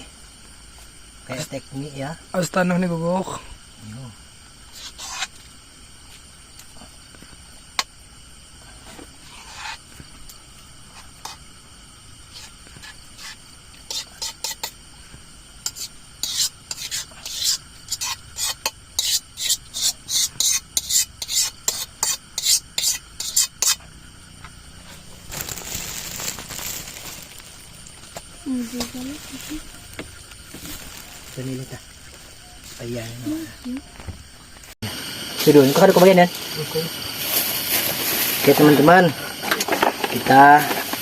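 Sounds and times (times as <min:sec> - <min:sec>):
utensil scraping noodles in a pan: 0:04.7 - 0:05.4, 0:08.8 - 0:10.0, 0:10.8 - 0:11.5, 0:12.2 - 0:14.8, 0:15.6 - 0:23.9.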